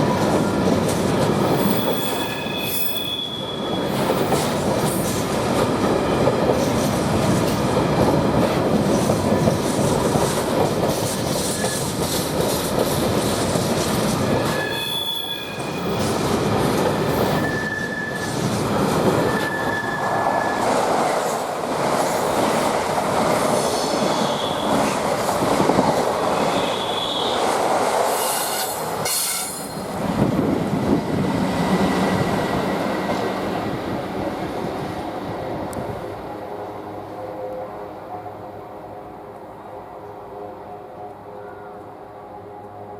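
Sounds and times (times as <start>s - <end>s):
train passing on rails: 0.0s - 42.9s
high wheel squeals: 1.4s - 4.4s, 14.3s - 16.0s, 17.0s - 18.4s, 19.2s - 20.7s.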